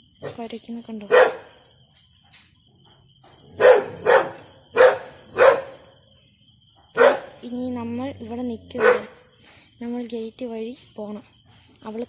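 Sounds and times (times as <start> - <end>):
insects trilling: 0.0 - 12.0
dog barking: 1.1 - 1.5, 3.6 - 5.8, 7.0 - 7.4, 8.8 - 9.2.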